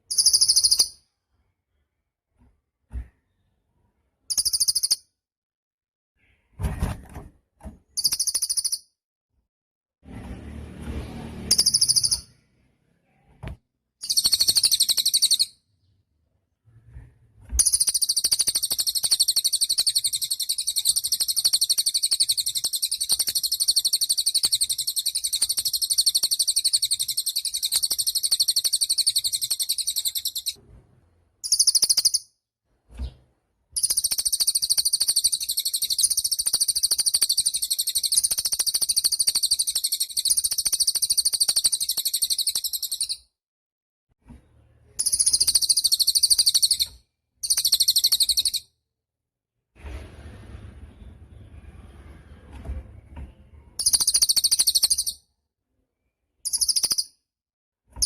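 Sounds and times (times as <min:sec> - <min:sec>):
bird singing high-pitched trills: 0:00.1 - 0:01.0, 0:04.3 - 0:05.0, 0:08.0 - 0:08.9, 0:11.5 - 0:12.3, 0:14.0 - 0:15.6, 0:17.6 - 0:30.6, 0:31.4 - 0:32.3, 0:33.8 - 0:43.2, 0:45.0 - 0:48.6, 0:53.8 - 0:55.2, 0:56.5 - 0:57.1.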